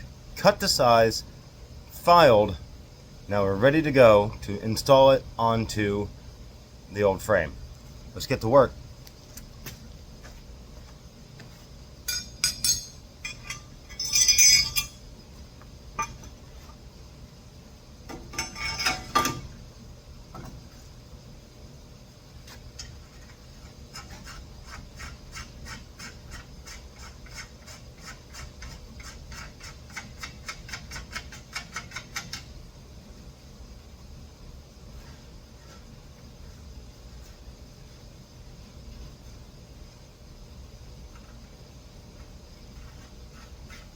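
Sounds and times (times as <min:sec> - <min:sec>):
metal bicycle parts clanking: 0:12.1 - 0:15.0, 0:18.3 - 0:19.5.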